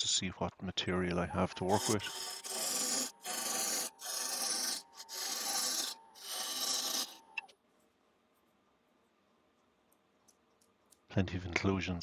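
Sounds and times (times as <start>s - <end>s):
lathe tool cutting wood: 1.3s - 7.5s.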